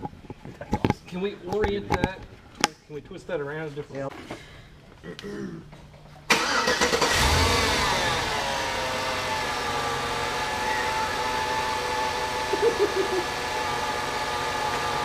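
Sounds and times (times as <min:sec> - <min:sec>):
car engine idling: 0:06.3 - 0:15.0.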